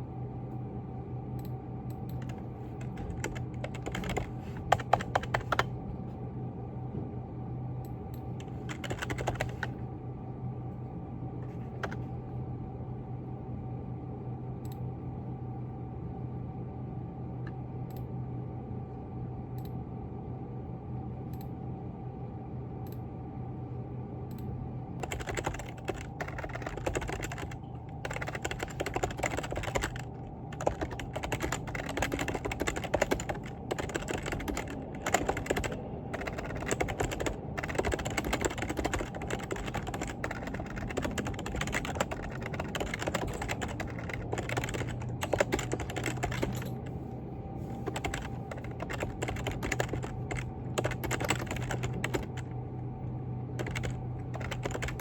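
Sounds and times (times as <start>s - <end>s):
steady low hum: 0.0s - 55.0s
computer keyboard typing: 2.1s - 5.7s, 8.4s - 9.7s, 11.7s - 12.0s, 25.0s - 46.9s, 47.8s - 52.5s, 53.6s - 55.0s.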